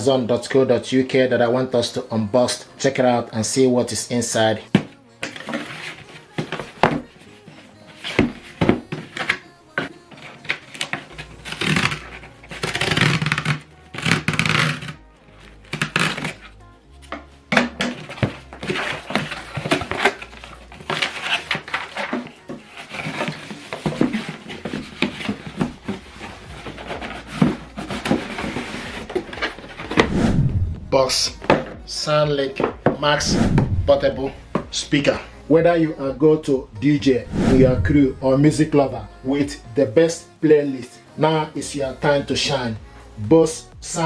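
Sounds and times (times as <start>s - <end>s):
background music: 0.0s - 44.0s
packaging rustling: 4.7s - 16.6s, 17.6s - 30.1s.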